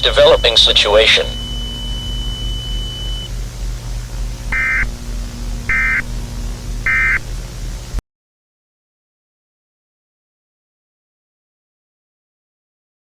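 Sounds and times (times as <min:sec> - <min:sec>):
buzzy warbling data bursts: 0:00.0 - 0:08.0
steady low hum: 0:00.0 - 0:08.0.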